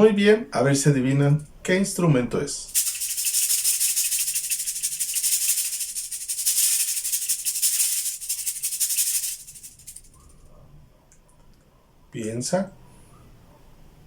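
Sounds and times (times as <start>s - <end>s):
cabasa rasping: 2.7s - 10.1s.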